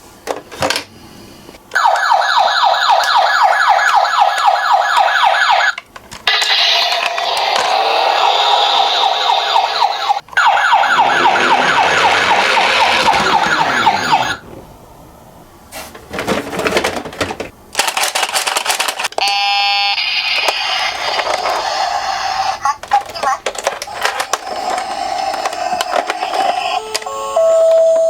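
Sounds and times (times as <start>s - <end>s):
toy siren yelping: 1.7s - 14.4s.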